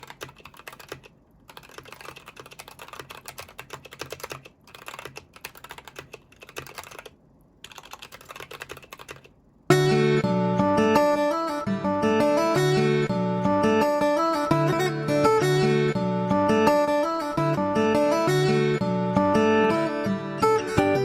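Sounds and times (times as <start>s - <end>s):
mechanical keyboard typing: 0.0s - 9.4s
acoustic guitar music: 9.7s - 21.0s.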